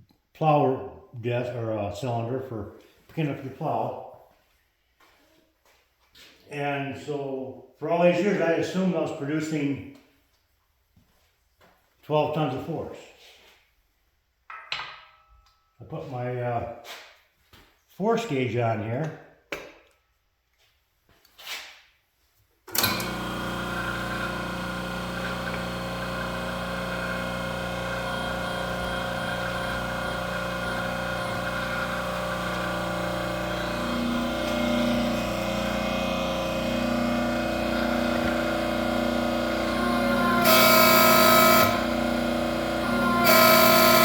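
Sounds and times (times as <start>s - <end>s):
hydraulic press whining: 22.7s - 44.0s
hydraulic pump running: 22.7s - 44.0s.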